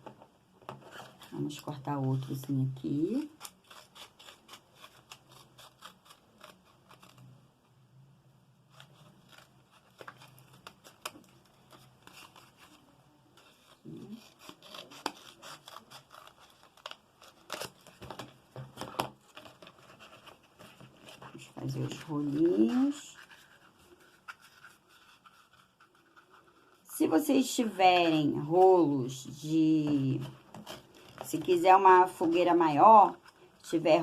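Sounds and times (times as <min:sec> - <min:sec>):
paper crinkling and rustling: 0:08.7 - 0:26.9, 0:29.9 - 0:32.4
scissors snipping cardboard: 0:14.1 - 0:22.6.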